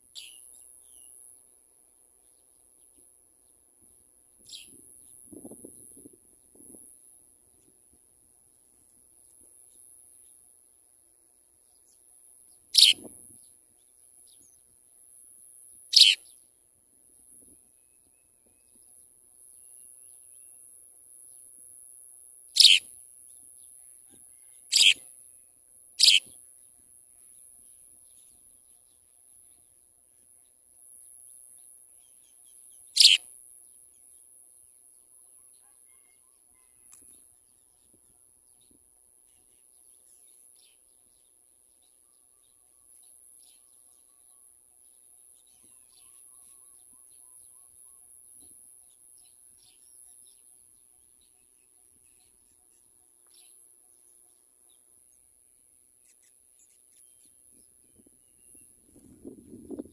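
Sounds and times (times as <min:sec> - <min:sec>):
sparrows chirping: 0:00.0 - 0:01.2, 0:11.7 - 0:14.6, 0:15.9 - 0:16.4, 0:22.5 - 0:23.8, 0:24.7 - 0:25.0, 0:26.0 - 0:26.4, 0:31.2 - 0:34.3, 0:39.4 - 0:59.1.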